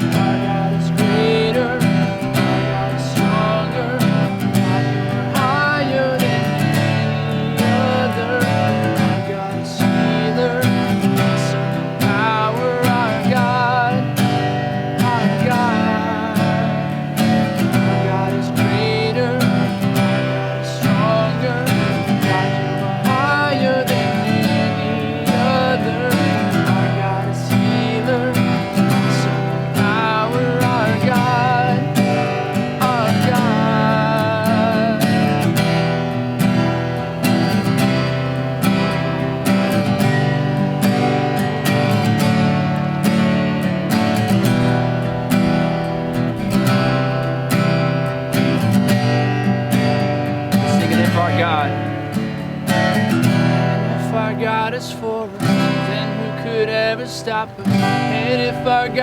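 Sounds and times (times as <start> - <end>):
person singing: 0.0 - 36.1, 50.5 - 52.5, 53.1 - 59.0
acoustic guitar strumming: 0.0 - 59.0.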